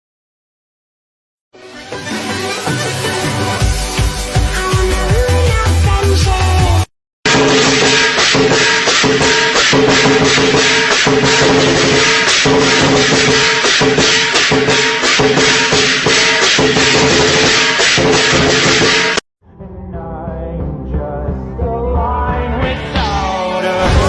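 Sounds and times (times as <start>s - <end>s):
shaker percussion beat: 3.6s - 6.8s.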